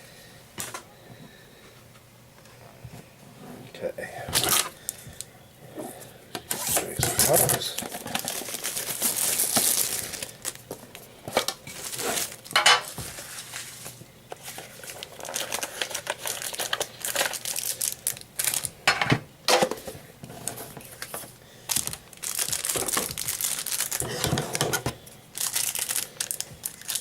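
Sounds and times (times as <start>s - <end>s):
wrapper tearing and crinkling: 6.5s - 10.7s, 11.4s - 13.6s, 14.4s - 18.7s, 20.4s - 27.0s.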